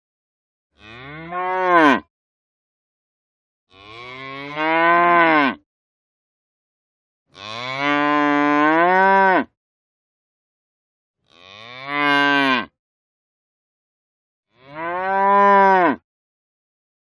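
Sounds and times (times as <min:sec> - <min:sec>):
cow mooing: 0:00.8 - 0:02.0, 0:03.7 - 0:05.6, 0:07.4 - 0:09.5, 0:11.3 - 0:12.7, 0:14.6 - 0:16.0.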